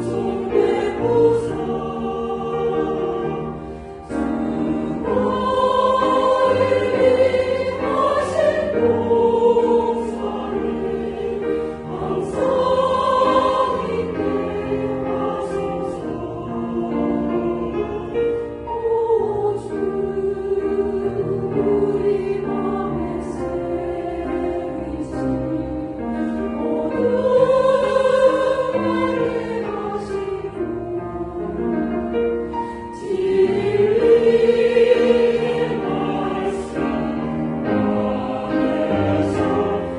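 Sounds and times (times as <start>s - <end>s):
church choir singing a hymn: 0.0s - 39.9s.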